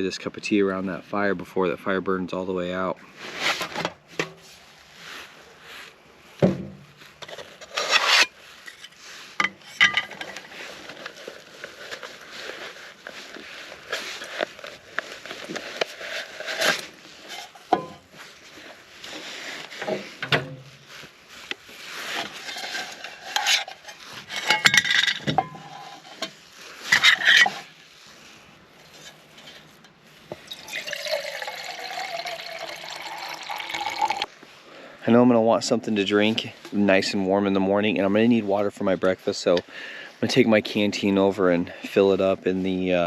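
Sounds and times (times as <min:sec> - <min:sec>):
water pouring and sloshing: 0:30.3 - 0:34.3.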